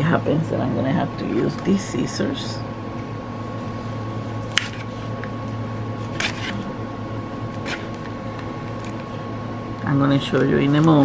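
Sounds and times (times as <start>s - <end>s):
steady low hum: 0.0s - 11.0s
scissors cutting plastic package: 6.2s - 6.7s, 7.6s - 8.1s.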